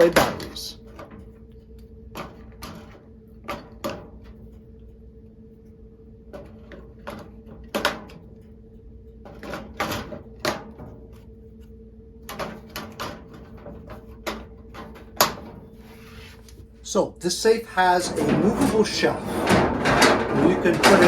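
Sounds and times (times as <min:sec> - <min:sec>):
clicks and knocks on metal safe: 0:18.0 - 0:21.0.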